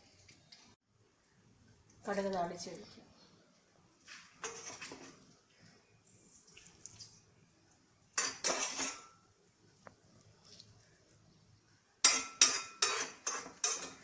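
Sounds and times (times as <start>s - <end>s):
metal utensils clinking on cookware: 4.4s - 5.2s, 8.2s - 9.2s, 12.0s - 14.0s.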